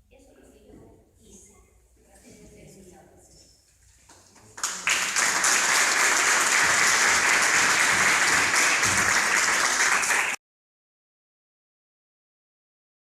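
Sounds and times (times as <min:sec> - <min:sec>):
audience applauding: 0:04.4 - 0:10.4.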